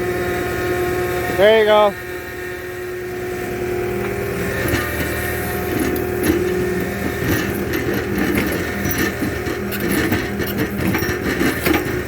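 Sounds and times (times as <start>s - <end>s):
skid steer engine running: 0.0s - 12.0s
knocks and scraping: 4.0s - 12.0s
auger grinding against rock: 4.1s - 12.0s.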